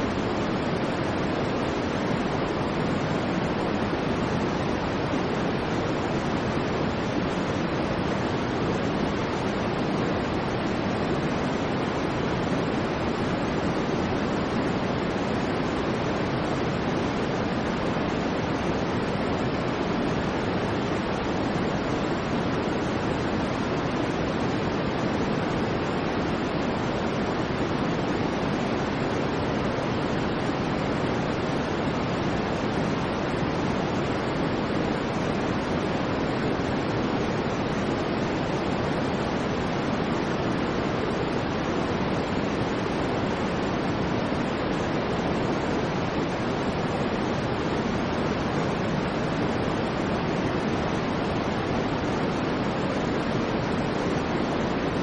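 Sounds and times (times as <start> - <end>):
white noise hiss: 0.0 - 55.0.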